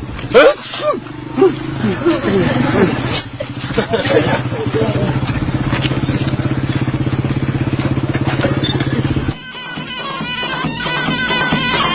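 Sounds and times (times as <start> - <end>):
engine running with throb: 0.0 - 11.9
music: 9.3 - 11.9.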